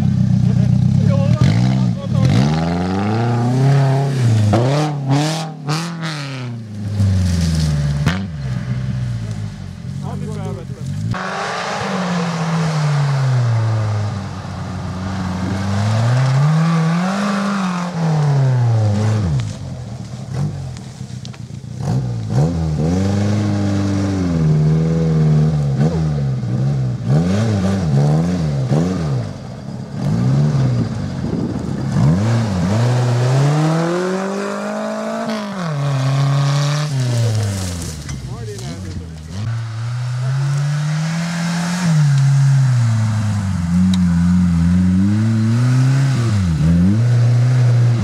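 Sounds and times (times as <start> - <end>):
off-road vehicle engine revving: 0.0 - 48.0.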